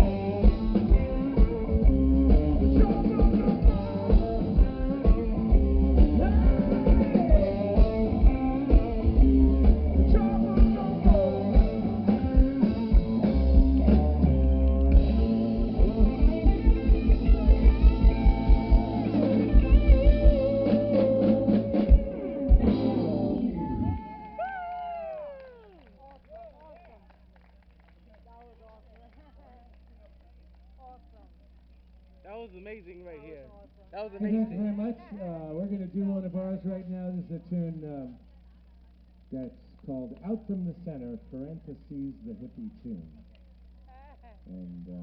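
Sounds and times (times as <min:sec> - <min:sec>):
live rock band playing: 0:00.0 - 0:24.2.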